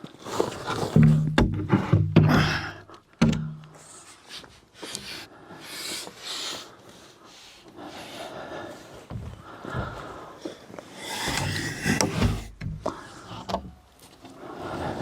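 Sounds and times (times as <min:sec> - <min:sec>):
soft breathy rustling: 0:03.8 - 0:15.0.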